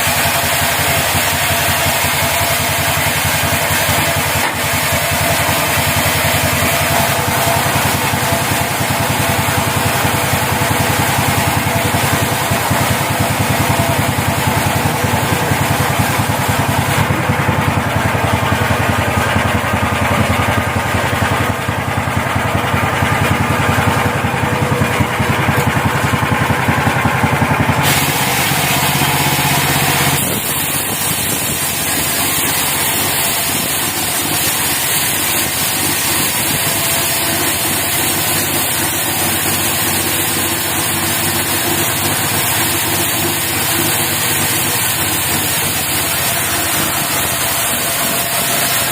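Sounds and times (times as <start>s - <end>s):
sawmill engine running: 0.0s - 48.9s.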